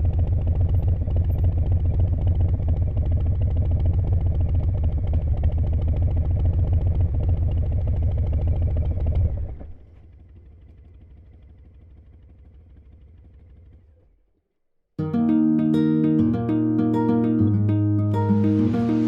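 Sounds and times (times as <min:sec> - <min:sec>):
motorcycle engine running: 0:00.0 - 0:14.2.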